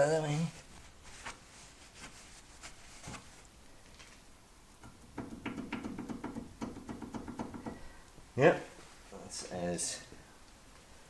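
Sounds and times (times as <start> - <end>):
light clicks and knocks: 4.8 - 7.9.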